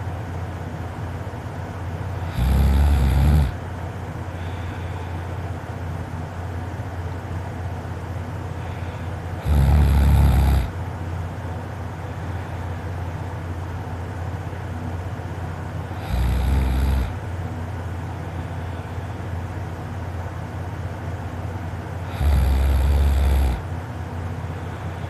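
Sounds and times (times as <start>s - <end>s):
steady low background noise: 0.0s - 25.0s
person snoring: 2.2s - 3.6s, 9.4s - 10.7s, 15.9s - 17.2s, 22.0s - 23.7s.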